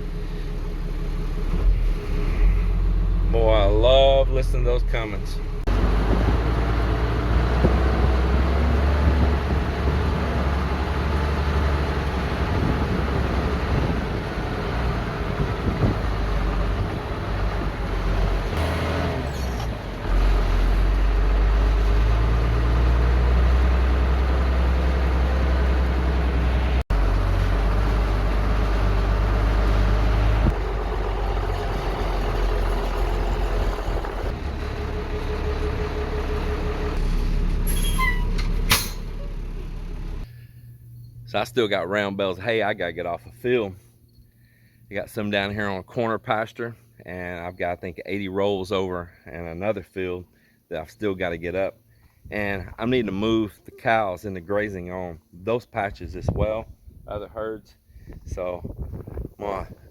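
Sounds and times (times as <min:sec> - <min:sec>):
diesel engine purring: 0:00.0 - 0:45.7.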